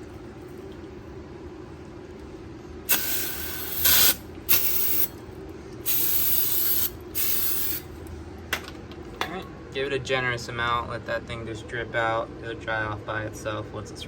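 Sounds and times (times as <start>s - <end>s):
aerosol can spraying: 2.9s - 5.1s, 5.9s - 7.9s.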